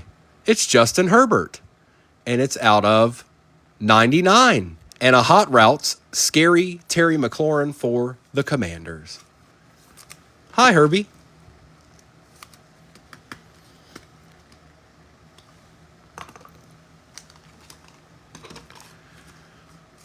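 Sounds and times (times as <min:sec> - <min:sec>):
faint steady hum: 0:00.0 - 0:20.0
cards clicking and tapping: 0:12.4 - 0:14.6.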